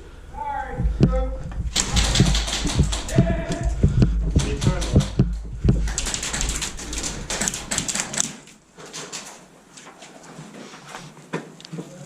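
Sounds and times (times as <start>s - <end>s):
pellets striking surfaces: 0.8s - 8.4s
airsoft gunfire clicking: 1.0s - 8.5s.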